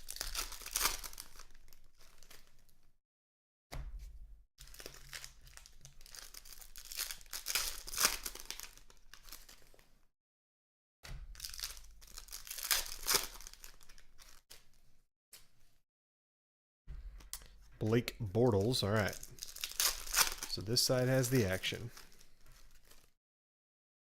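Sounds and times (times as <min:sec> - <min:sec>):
foil wrappers tearing and crinkling: 0:00.0 - 0:02.8, 0:04.6 - 0:09.9, 0:11.3 - 0:14.7, 0:18.9 - 0:23.2.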